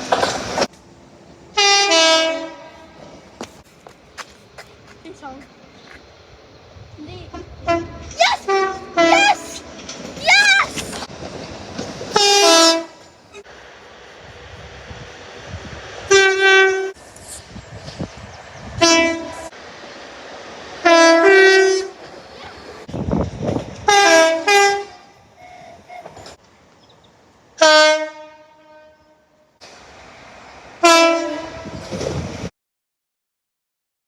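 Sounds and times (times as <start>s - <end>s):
train rumble: 0.0s - 32.5s
two-tone train horn blasts: 1.5s - 3.1s, 7.3s - 9.4s, 12.1s - 13.1s, 16.1s - 17.0s, 18.8s - 19.5s, 20.8s - 22.0s, 23.8s - 26.2s, 27.6s - 29.5s, 30.8s - 31.8s.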